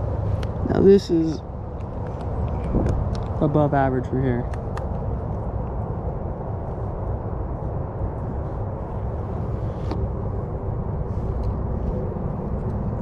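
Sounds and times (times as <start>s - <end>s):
wind rumbling on microphone: 0.0s - 13.0s.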